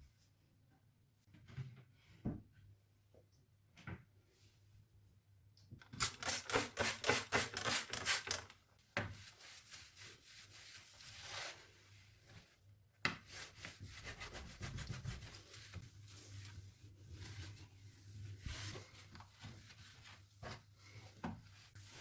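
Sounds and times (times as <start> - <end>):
brush scrubbing a surface: 9.2 - 12.5, 13.2 - 22.0.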